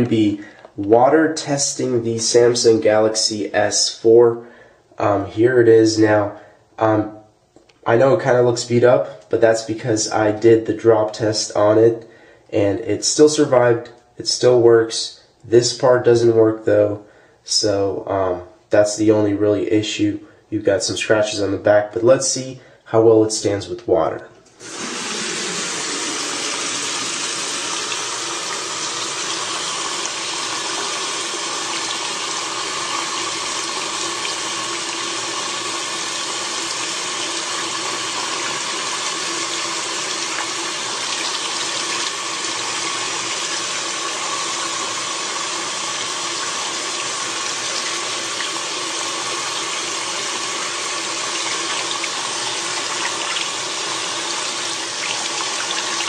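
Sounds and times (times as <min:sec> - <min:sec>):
water running from a tap: 0:24.6 - 0:56.0.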